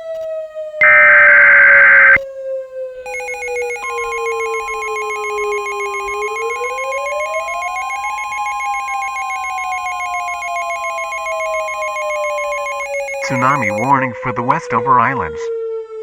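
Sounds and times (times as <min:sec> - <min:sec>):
sliding siren-like tone: 0:00.8 - 0:02.2, 0:03.1 - 0:14.6
steady warning tone: 0:00.8 - 0:02.2, 0:03.1 - 0:14.0.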